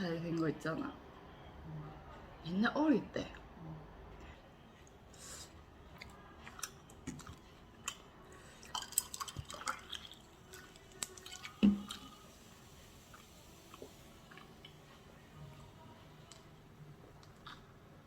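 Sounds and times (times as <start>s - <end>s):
crunchy chewing of fried chicken: 5.2s - 12.2s, 13.0s - 14.8s, 17.2s - 17.8s.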